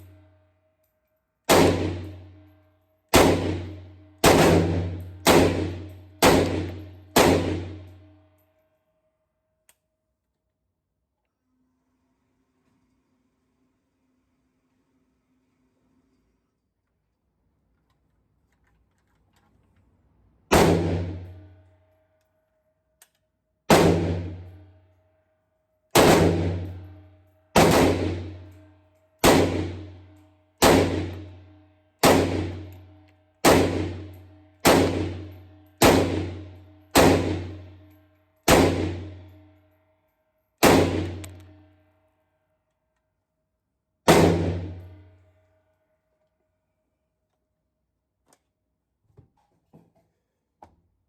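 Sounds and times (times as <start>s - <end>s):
gunshots with metallic ring: 1.5s - 8.4s, 20.5s - 21.6s, 23.7s - 24.6s, 25.9s - 39.7s, 40.6s - 41.8s, 44.1s - 45.2s.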